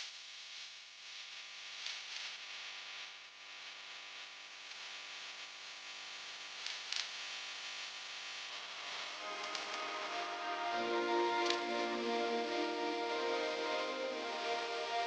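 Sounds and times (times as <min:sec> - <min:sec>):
faint music with sustained notes: 0:09.2 - 0:15.0.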